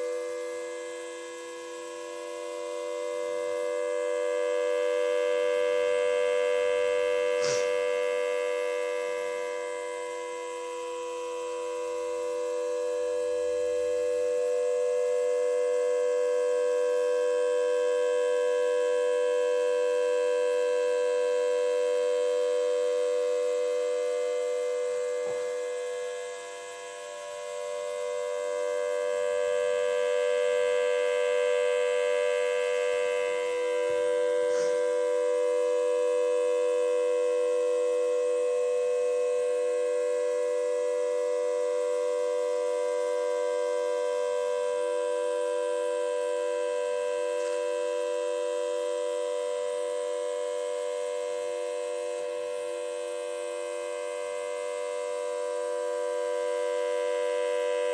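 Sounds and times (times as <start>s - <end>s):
siren steady tone: 0.0s - 57.9s.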